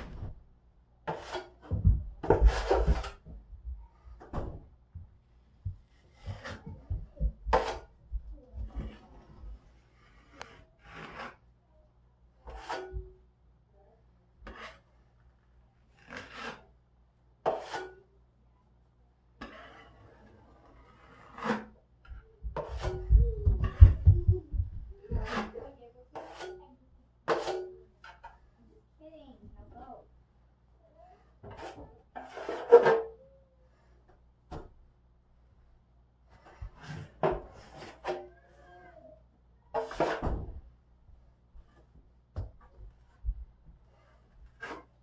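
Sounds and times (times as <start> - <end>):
drywall knife scraping compound: 1.0 - 3.3, 5.7 - 8.0, 8.8 - 11.6, 12.4 - 13.2, 14.4 - 16.8, 17.4 - 18.1, 19.4 - 23.0, 25.1 - 28.6, 31.1 - 34.7, 36.2 - 38.8, 39.7 - 40.4, 41.1 - 45.0.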